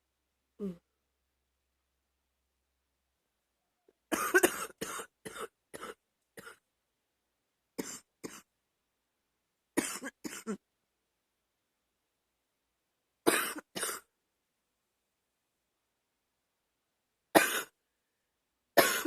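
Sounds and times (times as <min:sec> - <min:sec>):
woman coughing: 0:04.1 - 0:06.6, 0:09.8 - 0:10.6, 0:13.3 - 0:14.1, 0:17.4 - 0:17.7, 0:18.8 - 0:19.0.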